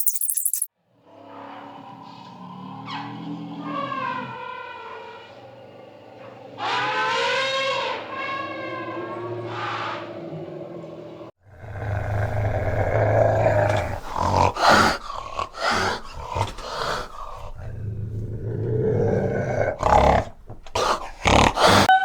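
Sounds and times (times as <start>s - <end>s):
animal rasping calls: 11.6s - 21.9s.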